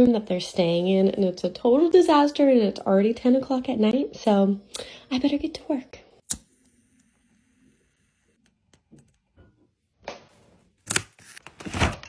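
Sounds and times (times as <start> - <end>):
sharp click: 6.2 - 6.6.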